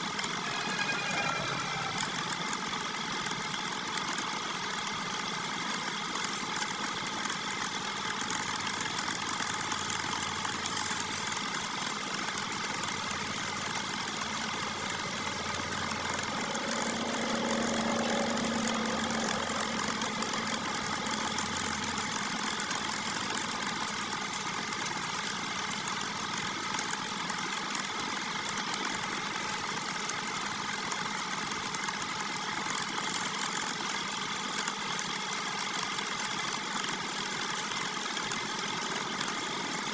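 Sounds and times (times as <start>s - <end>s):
wood lathe motor hum: 0.2s - 3.3s, 5.5s - 27.2s
low hum: 0.3s - 2.9s, 12.3s - 24.2s.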